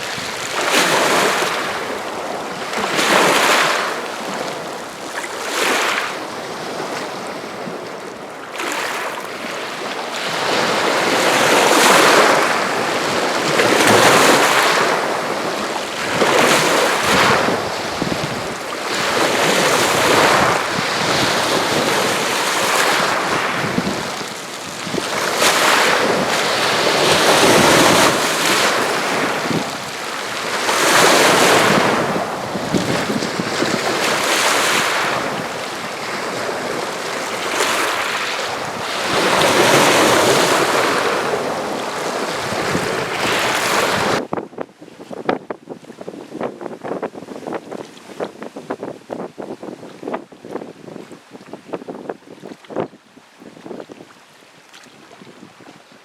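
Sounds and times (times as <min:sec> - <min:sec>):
small waves splashing on shore: 0:00.0 - 0:44.2.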